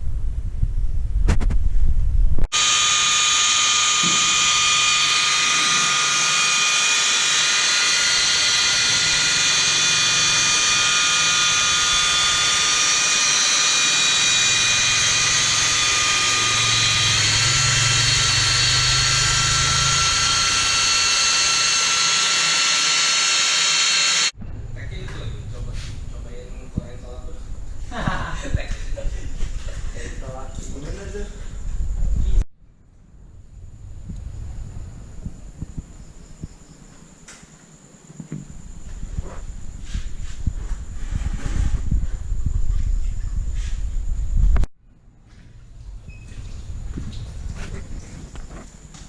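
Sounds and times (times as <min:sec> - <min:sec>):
high-pitched power tool whine: 0:02.5 - 0:24.4.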